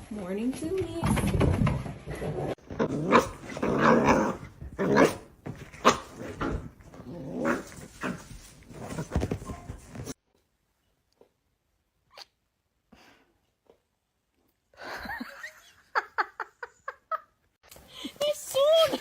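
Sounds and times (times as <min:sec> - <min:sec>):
dog growling and barking: 0:02.2 - 0:09.8.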